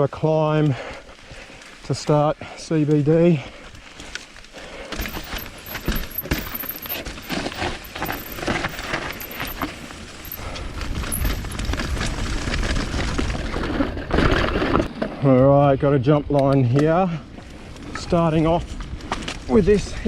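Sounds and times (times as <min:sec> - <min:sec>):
bike clicks and rattles: 0:03.5 - 0:15.2, 0:16.4 - 0:19.7.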